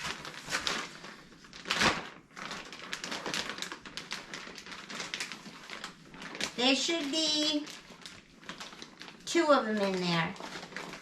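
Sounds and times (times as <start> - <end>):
plastic packaging crinkling: 0.0 - 11.0.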